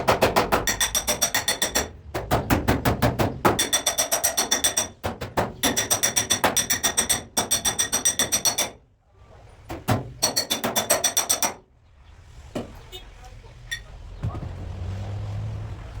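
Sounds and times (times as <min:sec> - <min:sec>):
hammer tapping sheet metal: 0:00.0 - 0:08.8, 0:09.7 - 0:11.6.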